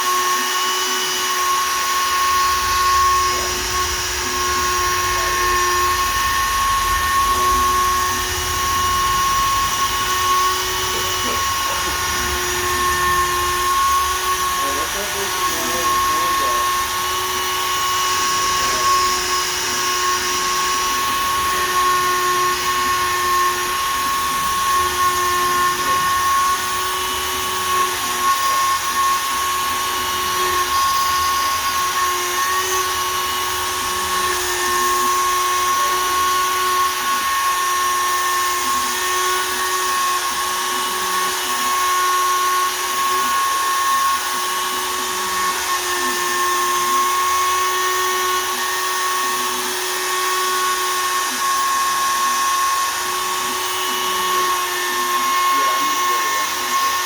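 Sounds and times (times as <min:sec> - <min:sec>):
router cutting wood: 0:00.0 - 0:57.0.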